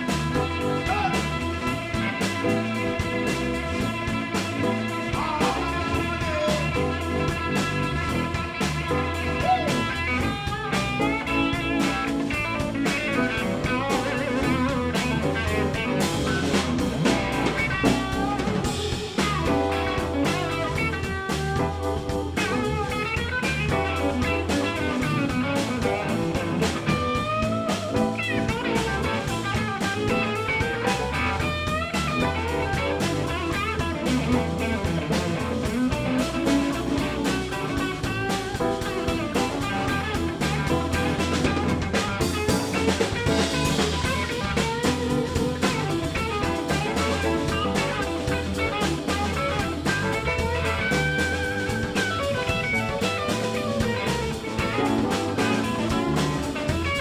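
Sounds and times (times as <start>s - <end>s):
bass and drum groove: 0.0s - 57.0s
electric guitar solo: 0.0s - 57.0s.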